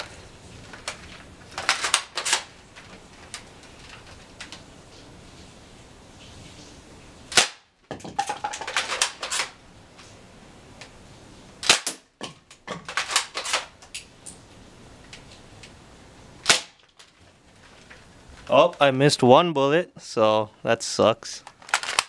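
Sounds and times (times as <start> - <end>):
airsoft rifle snaps: 11.6 - 12.0.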